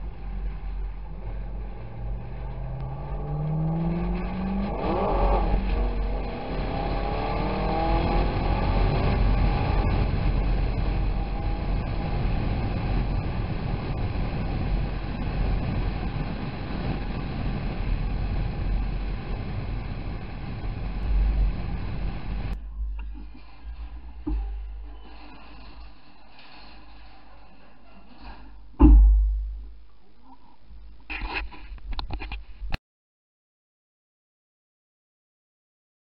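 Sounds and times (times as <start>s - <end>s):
car engine revving: 0.0s - 25.0s
road and wind noise: 0.0s - 29.8s, 31.1s - 32.8s.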